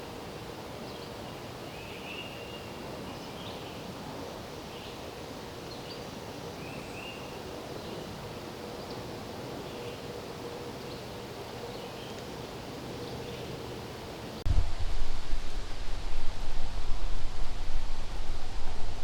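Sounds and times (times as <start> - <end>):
wind rustling leaves: 0.0 - 19.0.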